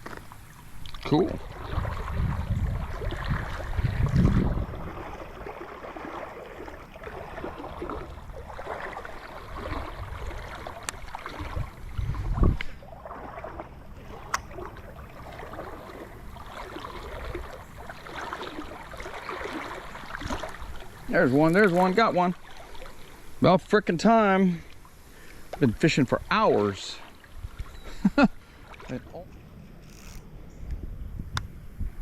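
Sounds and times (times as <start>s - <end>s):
river current rushing: 0.0s - 29.1s.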